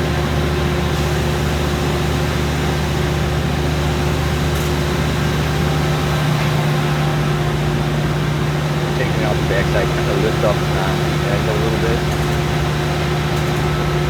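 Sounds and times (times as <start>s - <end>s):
belt sander machine hum: 5.0s - 14.0s.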